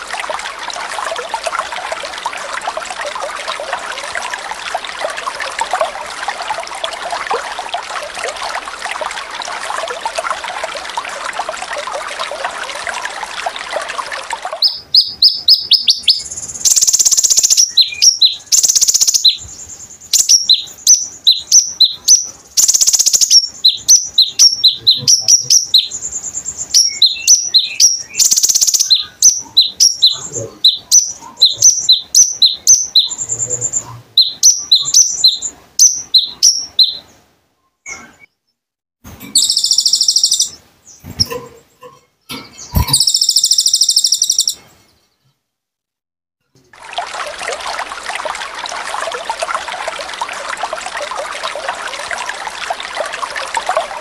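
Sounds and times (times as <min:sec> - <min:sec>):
bird singing high chirps: 0:14.6 - 0:37.1, 0:39.3 - 0:41.4, 0:42.4 - 0:45.1
buzzy bird trills: 0:39.4 - 0:44.6.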